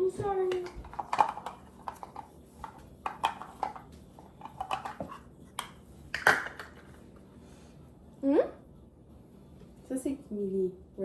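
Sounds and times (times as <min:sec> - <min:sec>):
utensils and bowl clattering: 0:00.2 - 0:07.0.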